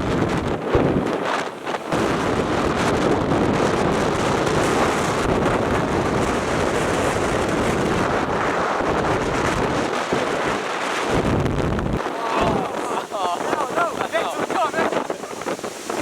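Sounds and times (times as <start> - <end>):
storm wind buffeting microphone: 0.0 - 16.0.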